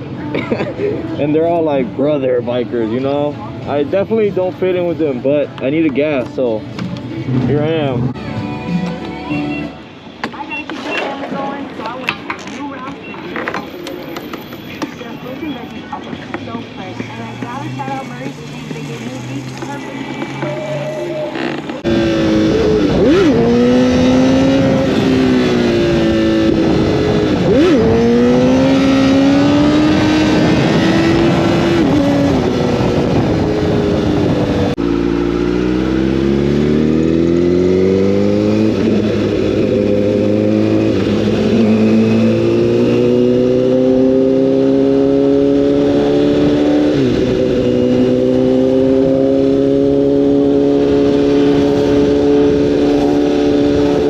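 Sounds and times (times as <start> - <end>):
motorcycle engine revving: 17.2 - 54.0.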